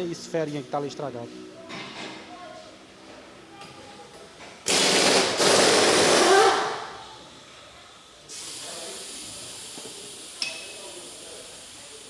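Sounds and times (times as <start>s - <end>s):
pneumatic impact wrench hammering: 4.6s - 7.0s.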